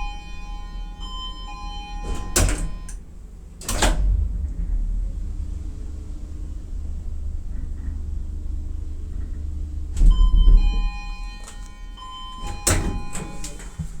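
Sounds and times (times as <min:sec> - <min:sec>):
two-note elevator chime: 0:00.0 - 0:03.0, 0:10.1 - 0:13.8
elevator running rumble: 0:00.0 - 0:14.0
elevator stopping clunk: 0:00.0 - 0:14.0.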